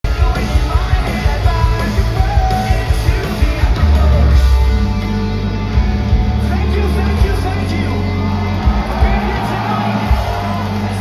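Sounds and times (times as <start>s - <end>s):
rock band playing live: 0.0s - 11.0s.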